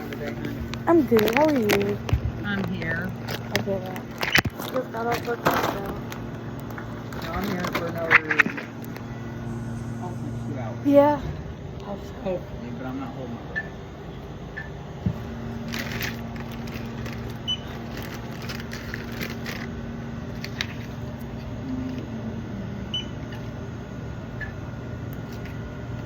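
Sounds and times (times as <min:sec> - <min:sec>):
steady low hum: 0:00.0 - 0:26.0
checkout scanner beeps: 0:09.0 - 0:11.2, 0:13.5 - 0:13.8, 0:14.5 - 0:14.8, 0:17.4 - 0:17.9, 0:22.8 - 0:23.5, 0:24.3 - 0:24.6
rustling: 0:15.6 - 0:19.7.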